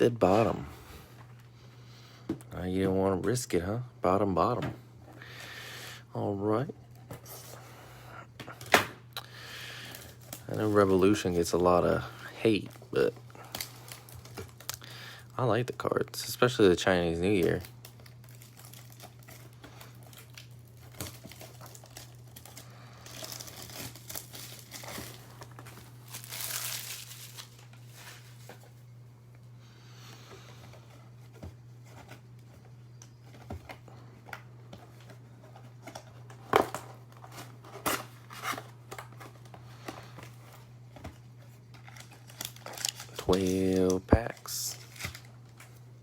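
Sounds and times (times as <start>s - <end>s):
plastic wrapping crinkling and tearing: 9.8s - 15.3s, 17.1s - 28.8s, 34.8s - 45.8s.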